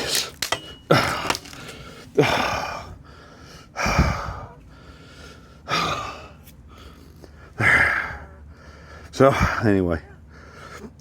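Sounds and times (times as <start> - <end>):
man sighing and huffing: 0.9 - 6.4.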